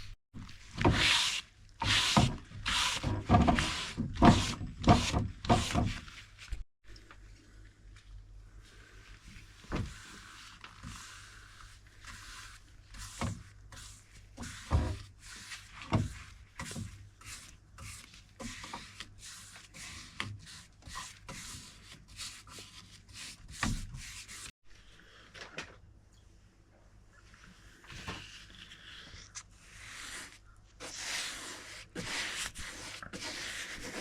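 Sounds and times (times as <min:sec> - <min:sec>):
rubbing or scraping on wood: 0:00.4 - 0:06.6, 0:27.9 - 0:34.0.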